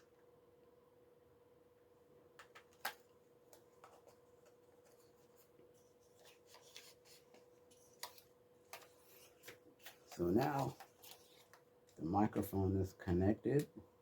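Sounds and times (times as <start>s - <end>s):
clicks and rustling of handling: 2.4s - 12.6s.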